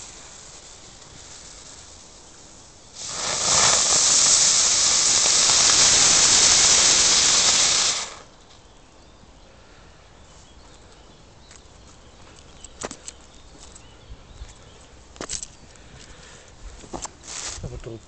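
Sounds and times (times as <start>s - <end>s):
ground spinner firework hissing: 0.0s - 8.4s, 17.2s - 17.9s.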